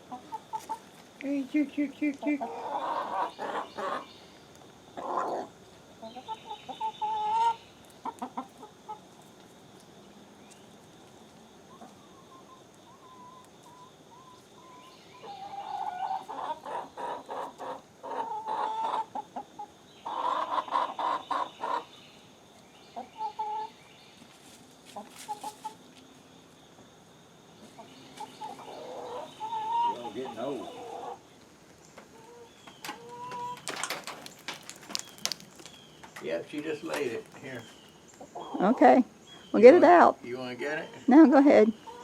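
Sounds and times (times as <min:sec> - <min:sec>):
hens clucking: 0:00.0 - 0:04.2, 0:05.0 - 0:09.2, 0:11.7 - 0:21.9, 0:23.0 - 0:23.8, 0:24.9 - 0:26.0, 0:27.6 - 0:42.0.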